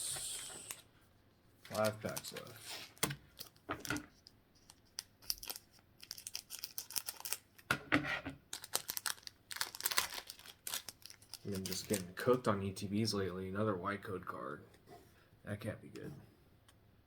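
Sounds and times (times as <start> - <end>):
foil wrapper crinkling and tearing: 1.7 - 7.7, 8.5 - 12.2.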